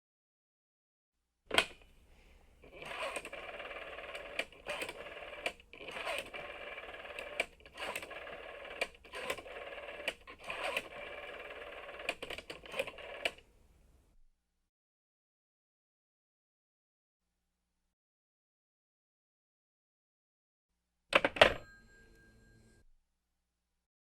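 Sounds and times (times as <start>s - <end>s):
telephone line hum: 2.6s - 13.5s, 21.4s - 22.8s.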